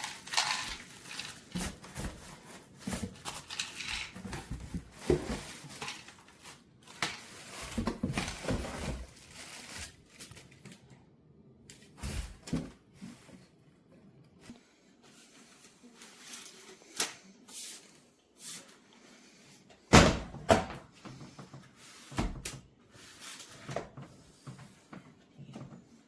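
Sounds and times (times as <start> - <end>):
packaging rustling and crinkling: 0.0 - 10.9.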